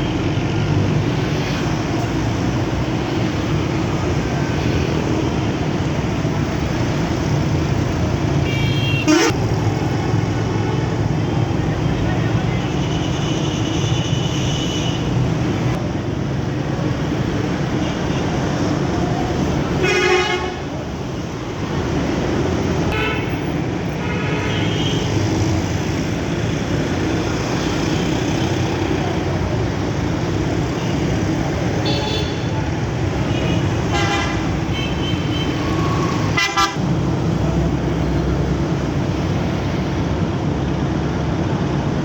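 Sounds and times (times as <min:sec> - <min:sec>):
engine and traffic rumble: 0:00.0 - 0:42.0
bus horn blasts: 0:08.4 - 0:09.4, 0:19.8 - 0:20.6, 0:22.9 - 0:25.0, 0:33.4 - 0:36.8.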